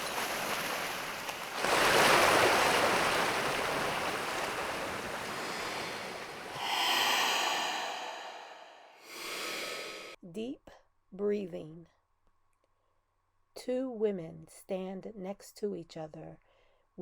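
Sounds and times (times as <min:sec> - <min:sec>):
waves washing in: 0:00.0 - 0:10.2.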